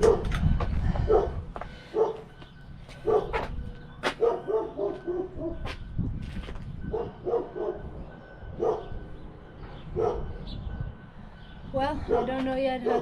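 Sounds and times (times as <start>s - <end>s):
dog barking: 1.1s - 2.3s, 3.0s - 3.4s, 4.2s - 5.6s, 6.9s - 7.8s, 8.6s - 8.9s, 10.0s - 10.3s, 12.1s - 13.0s.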